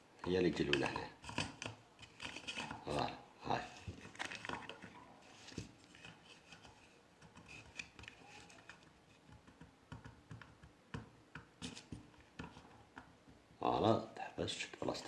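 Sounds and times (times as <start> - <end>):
plastic parts clicking and rubbing: 3.8 - 10.6.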